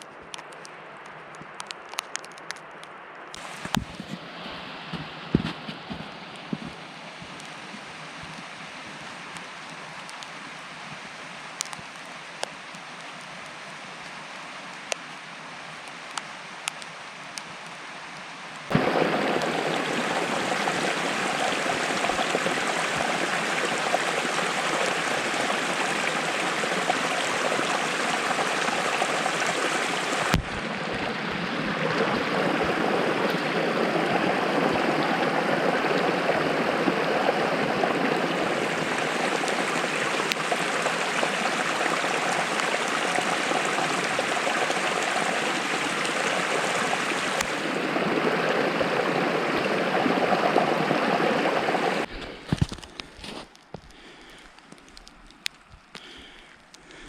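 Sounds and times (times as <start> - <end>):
stream water flowing: 3.4 - 12.9, 18.6 - 52.1.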